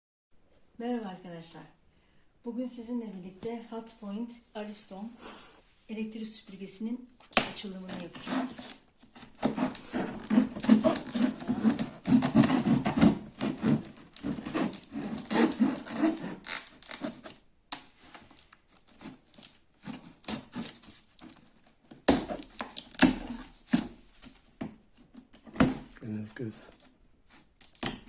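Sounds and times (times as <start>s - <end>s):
cardboard box being handled: 8.0s - 16.4s.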